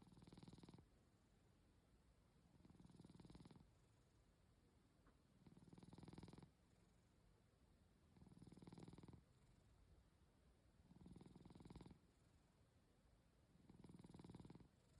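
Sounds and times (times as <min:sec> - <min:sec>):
faint snoring: 0:00.0 - 0:00.9, 0:02.5 - 0:03.7, 0:05.4 - 0:06.6, 0:08.2 - 0:09.7, 0:10.8 - 0:12.1, 0:13.6 - 0:14.9.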